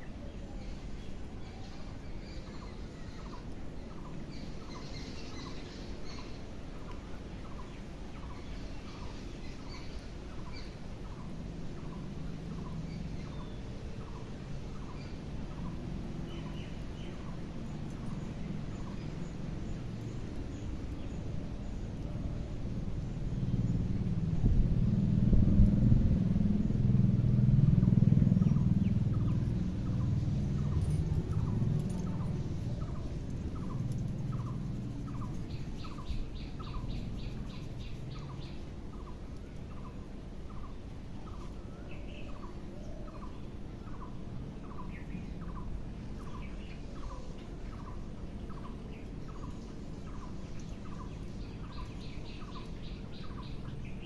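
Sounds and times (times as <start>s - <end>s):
bird chirping: 0.0s - 24.6s, 27.7s - 54.0s
low rumble: 19.6s - 39.1s.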